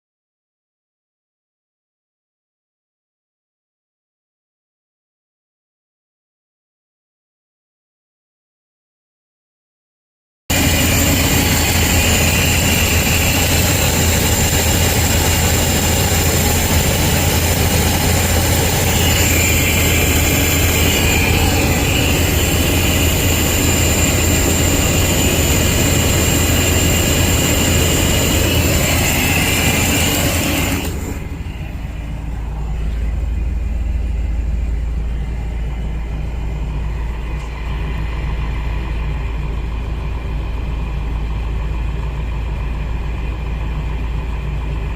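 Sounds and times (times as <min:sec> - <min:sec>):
loud hiss: 0:10.5 - 0:33.8
low hum: 0:10.5 - 0:44.9
motorhome engine running: 0:10.5 - 0:44.9.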